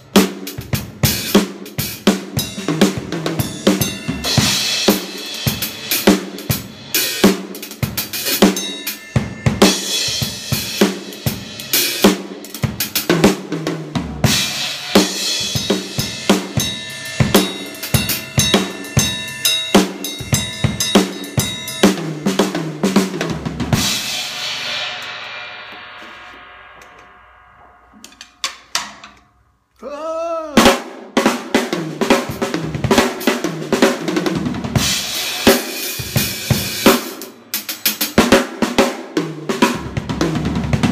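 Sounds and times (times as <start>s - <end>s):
drum kit groove: 0.0s - 29.2s, 29.8s - 40.9s
cymbal hit ringing: 3.4s - 12.0s, 15.0s - 28.8s.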